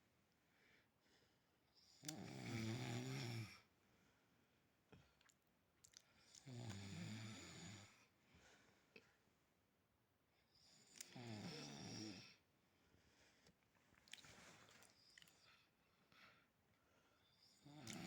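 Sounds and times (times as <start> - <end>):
quiet breathing: 0.4 - 2.2, 7.2 - 9.3, 10.4 - 18.0.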